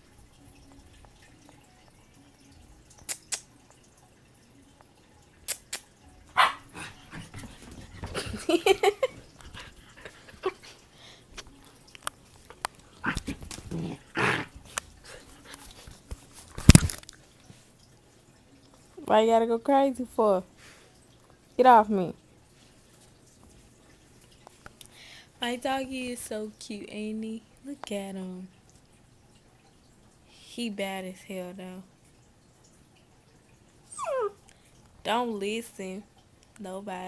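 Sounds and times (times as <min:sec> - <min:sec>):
puppy barking and yipping: 0:06.3 - 0:07.0, 0:33.9 - 0:34.4.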